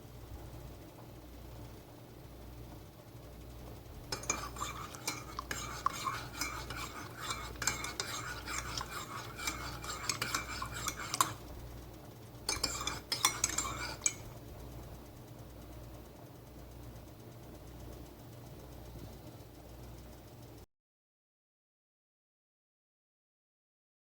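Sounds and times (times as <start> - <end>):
teaspoon clinking in a cup: 4.1 - 11.4, 12.5 - 14.3.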